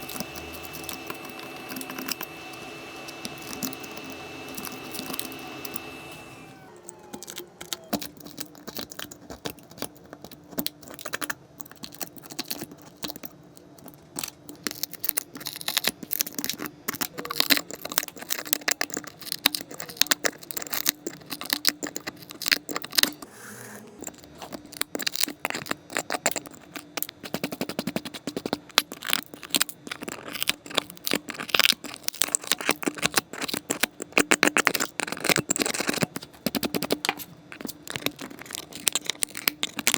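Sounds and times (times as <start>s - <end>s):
glass crackling and clicking: 28.7s - 39.9s.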